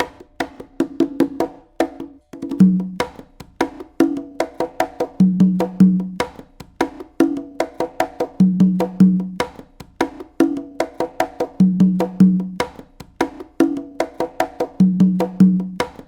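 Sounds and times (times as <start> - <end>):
hand drums played: 0.0 - 16.0.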